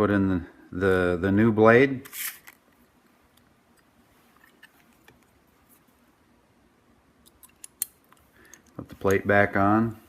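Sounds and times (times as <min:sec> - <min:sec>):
metal parts clicking and tapping: 0:07.2 - 0:09.2.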